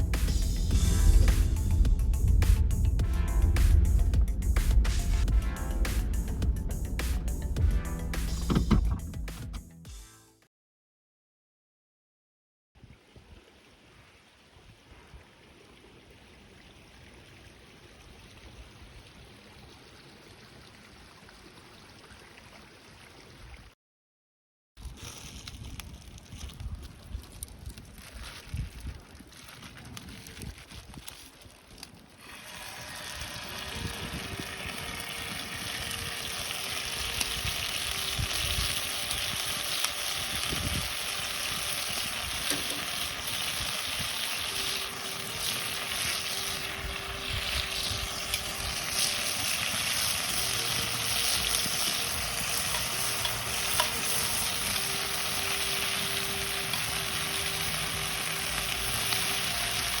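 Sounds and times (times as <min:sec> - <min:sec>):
food sizzling in a pan: 0:32.3 - 1:00.0.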